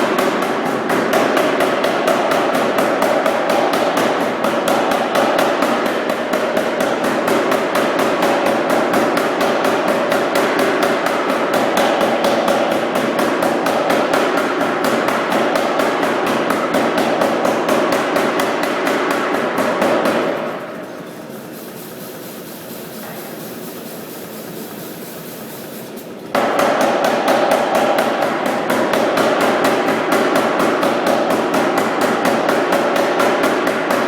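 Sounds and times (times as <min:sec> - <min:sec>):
power hammer striking hot steel: 0:26.3 - 0:34.0.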